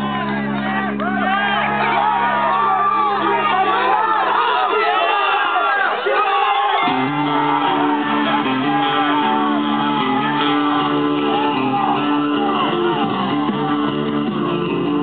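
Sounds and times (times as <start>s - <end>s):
music with held notes: 0.0s - 3.8s, 6.9s - 15.0s
crowd shouting: 0.0s - 15.0s.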